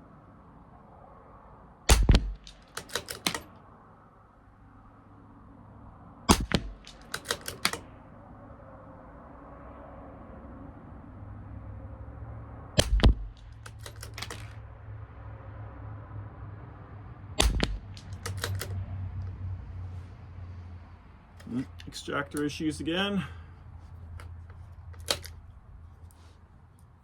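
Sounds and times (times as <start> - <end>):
rifle shots: 1.9 - 3.5, 6.3 - 7.9, 12.8 - 14.6, 17.4 - 18.8
rifle bolt metallic clicks: 1.9 - 3.6, 6.3 - 7.9, 12.8 - 14.6, 17.4 - 19.4, 21.4 - 22.6, 24.0 - 26.9.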